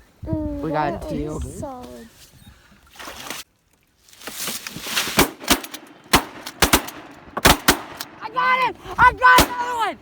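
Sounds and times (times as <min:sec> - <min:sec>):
shotgun shots: 0:05.1 - 0:08.2.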